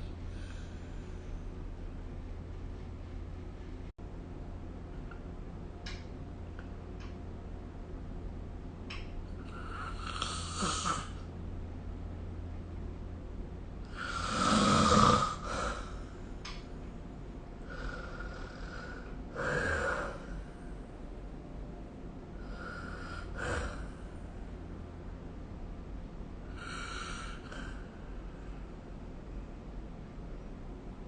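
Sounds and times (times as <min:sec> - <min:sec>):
person snoring: 0:09.4 - 0:11.2, 0:13.9 - 0:16.0, 0:17.6 - 0:20.4, 0:22.4 - 0:24.0, 0:26.5 - 0:27.8.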